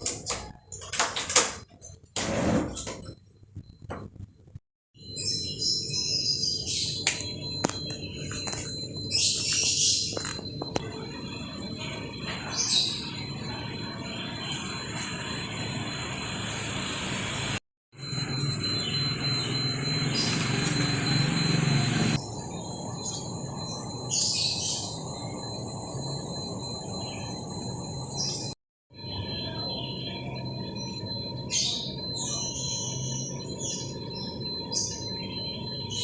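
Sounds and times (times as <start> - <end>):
bird chirps: 5.0 - 14.8, 18.6 - 25.7, 29.1 - 36.0.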